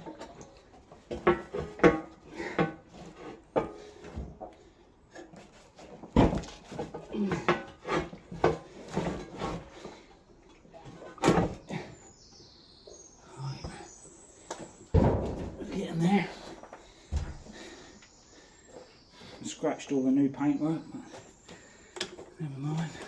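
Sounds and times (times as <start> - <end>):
metal knocks and clunks: 0.0 - 4.5, 6.0 - 9.7, 14.9 - 16.0.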